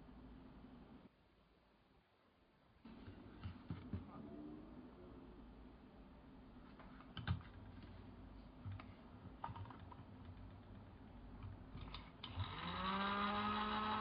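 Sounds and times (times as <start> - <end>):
small electric motor spinning: 12.2 - 14.0.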